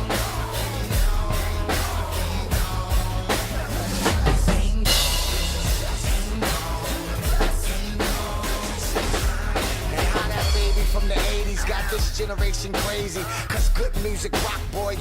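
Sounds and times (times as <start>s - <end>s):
drum kit playing: 0.0s - 15.0s
recorded song with heavy bass: 0.0s - 15.0s
cymbal crash: 4.1s - 12.3s.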